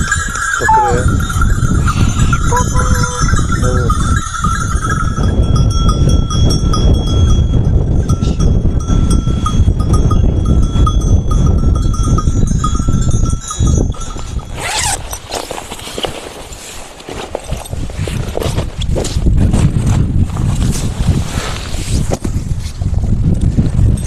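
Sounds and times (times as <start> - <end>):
wind buffeting microphone: 0.0 - 15.6, 17.4 - 24.0
sheep bells clinking: 0.0 - 16.0, 17.3 - 18.1.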